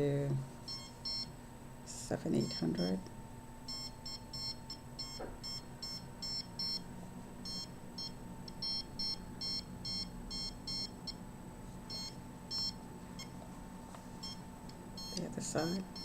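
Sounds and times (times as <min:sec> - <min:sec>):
high-pitched detector beeps: 0:00.7 - 0:01.3, 0:03.7 - 0:06.8, 0:07.4 - 0:11.2, 0:11.9 - 0:13.3, 0:15.0 - 0:16.0.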